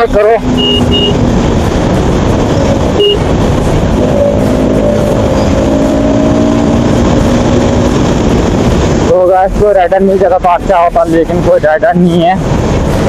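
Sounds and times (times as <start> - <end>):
motorcycle engine cruising: 0.0 - 9.1
wind noise on microphone: 0.4 - 9.1
short high beep: 0.6 - 1.2, 3.0 - 3.2.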